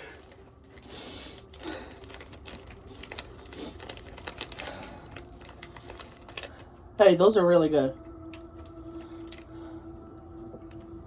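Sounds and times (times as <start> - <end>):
packaging rustle: 0.0 - 6.8
crunchy snack crackling: 0.8 - 6.6.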